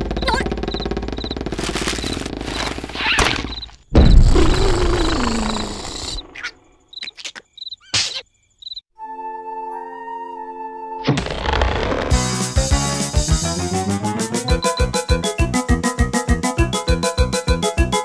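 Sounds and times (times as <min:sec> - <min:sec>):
loud hit: 0:03.9 - 0:04.8
dense cartoon noise: 0:03.9 - 0:06.4.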